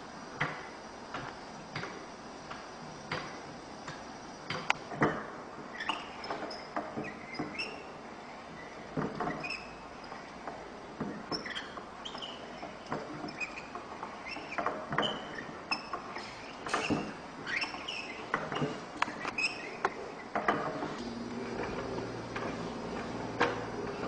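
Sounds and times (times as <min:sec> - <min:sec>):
squeaks and creaks of moving parts: 0:04.5 - 0:21.0.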